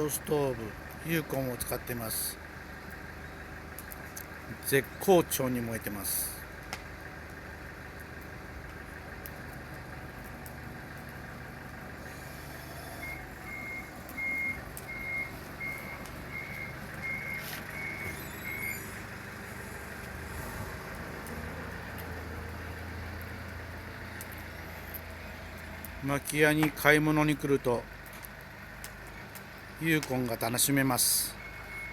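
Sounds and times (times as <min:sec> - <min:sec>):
low engine rumble: 0:00.0 - 0:31.9
vehicle reversing alarm beeping: 0:11.9 - 0:21.0, 0:29.8 - 0:31.9.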